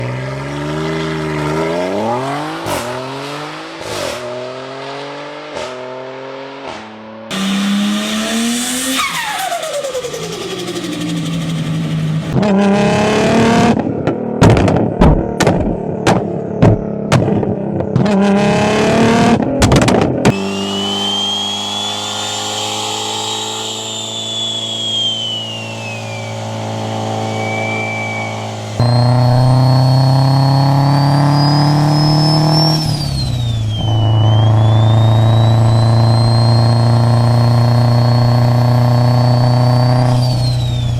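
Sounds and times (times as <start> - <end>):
car engine revving: 0.0 - 40.9
high turbo whistle: 7.3 - 12.3, 20.3 - 40.9.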